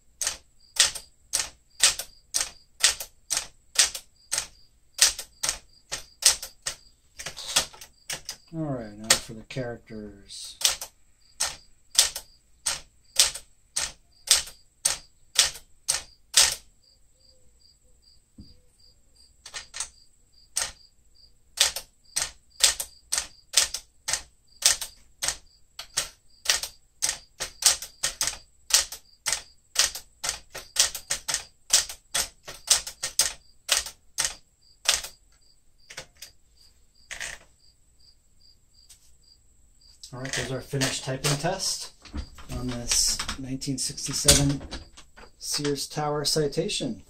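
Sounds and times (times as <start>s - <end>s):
typewriter keystrokes: 0.2s - 8.4s, 9.0s - 9.3s, 10.4s - 16.6s, 19.4s - 19.9s, 20.6s - 20.8s, 21.6s - 35.2s, 40.3s - 45.8s.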